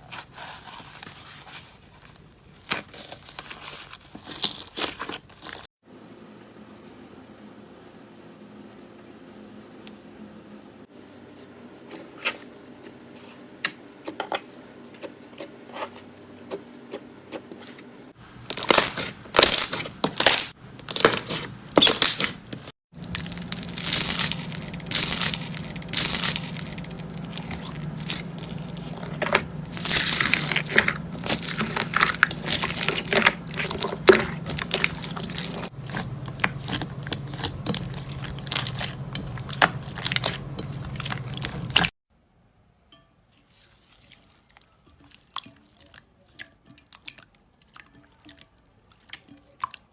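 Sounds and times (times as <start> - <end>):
slime crackling and popping: 23.0 - 41.9.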